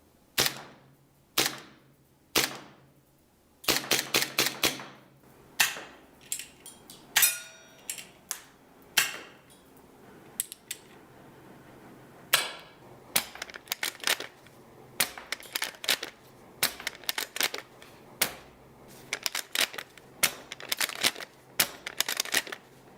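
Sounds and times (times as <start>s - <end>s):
airsoft guns clicking and snapping: 1.4s - 1.7s, 3.6s - 4.8s, 13.2s - 18.5s, 19.1s - 22.7s
short metallic ring: 7.2s - 7.9s.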